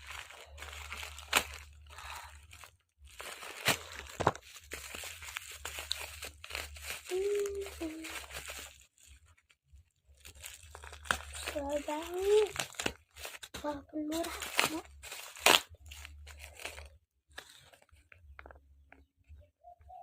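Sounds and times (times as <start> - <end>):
packaging crinkling and tearing: 0.0 - 18.6
person humming: 7.0 - 8.2.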